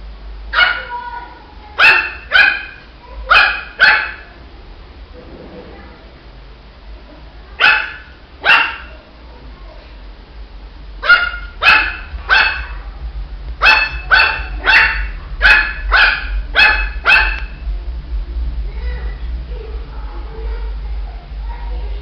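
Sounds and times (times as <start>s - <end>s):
puppy barking in high yaps: 0.5s - 0.9s, 1.8s - 4.3s, 7.6s - 8.9s, 11.0s - 12.7s, 13.6s - 17.6s.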